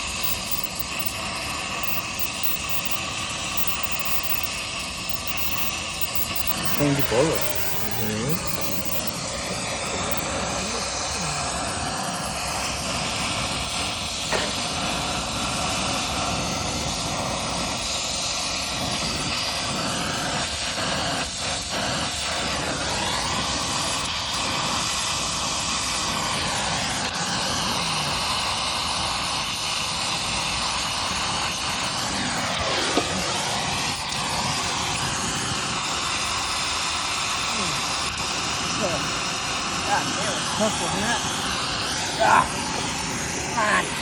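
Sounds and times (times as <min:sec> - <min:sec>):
torch flame rushing: 0:00.0 - 0:44.0.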